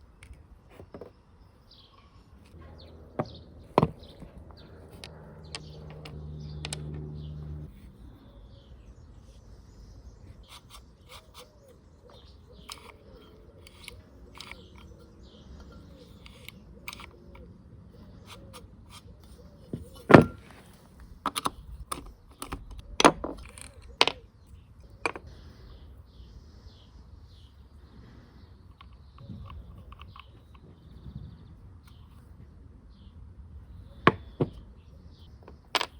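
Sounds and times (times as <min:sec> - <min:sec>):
metal parts clinking: 0:12.1 - 0:17.5, 0:35.4 - 0:35.9.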